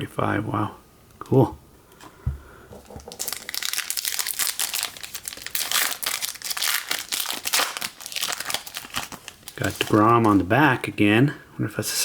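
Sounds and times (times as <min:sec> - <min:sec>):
card packaging crinkling: 0:02.8 - 0:10.6.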